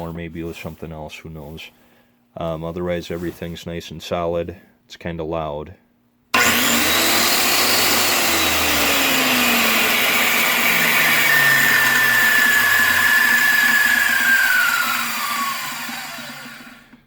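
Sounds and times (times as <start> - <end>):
circular saw running with whine: 6.4 - 17.0.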